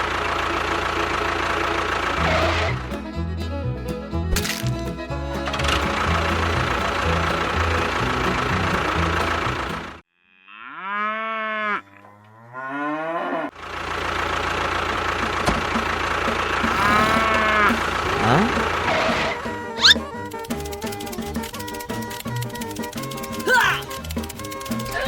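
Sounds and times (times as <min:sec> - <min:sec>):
cow mooing: 0:10.2 - 0:13.5, 0:16.6 - 0:20.0.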